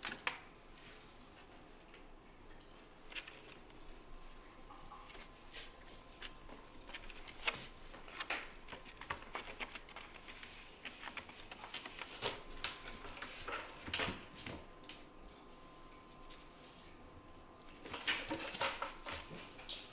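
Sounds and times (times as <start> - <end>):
kittens' paws scuffling on floor: 3.0 - 15.1, 16.1 - 19.9.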